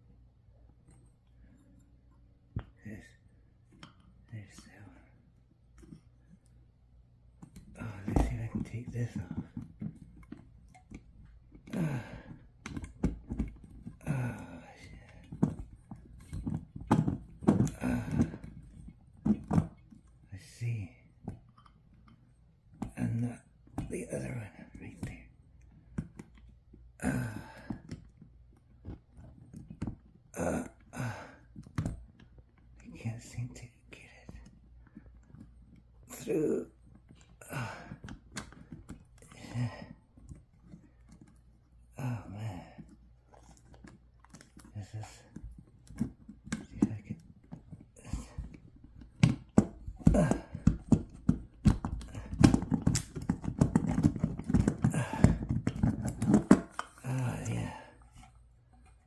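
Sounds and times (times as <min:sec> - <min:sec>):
man grunting: 0:11.8 - 0:12.3, 0:36.1 - 0:36.7, 0:50.1 - 0:50.6, 0:54.9 - 0:55.4, 0:57.0 - 0:58.0
plastic parts knocking and rattling: 0:15.0 - 0:20.1, 0:45.3 - 0:59.0.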